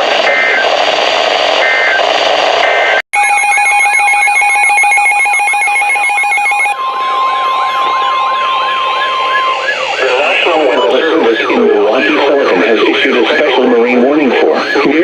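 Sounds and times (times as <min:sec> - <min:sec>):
chopped electronic alarm: 0:02.6 - 0:06.8
steady weather radio alert tone: 0:02.7 - 0:06.8, 0:09.2 - 0:15.0
siren-like wails: 0:02.8 - 0:13.2
data tone burst: 0:03.2 - 0:06.8.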